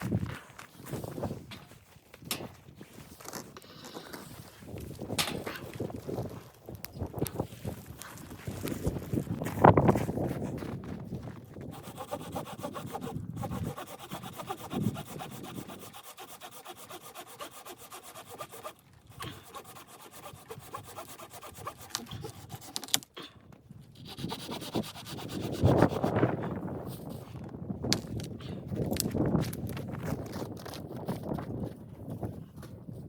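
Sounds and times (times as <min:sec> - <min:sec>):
hand tool scraping wood: 0:11.6 - 0:23.1, 0:24.0 - 0:26.3.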